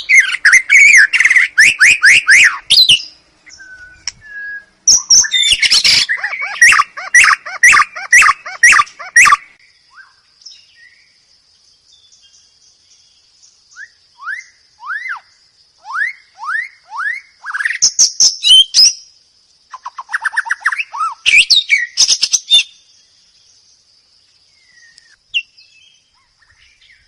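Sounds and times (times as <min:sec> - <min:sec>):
bird singing whistles and chatter: 0:00.0 - 0:10.2, 0:13.7 - 0:19.1, 0:19.7 - 0:22.8.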